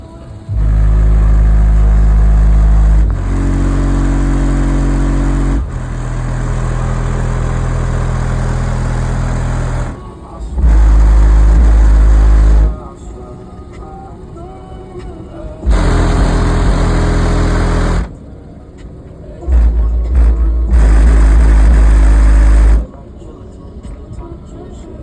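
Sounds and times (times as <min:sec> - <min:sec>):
deep subwoofer bass notes: 0:00.4 - 0:13.0, 0:15.5 - 0:18.2, 0:18.8 - 0:23.0.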